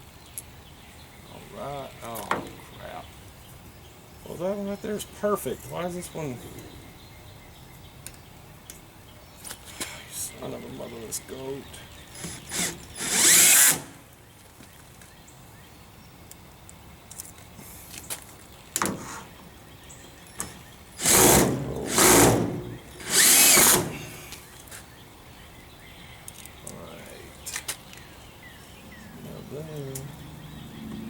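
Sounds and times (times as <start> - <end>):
power drill running: 12.2 - 14.0, 21.0 - 24.3.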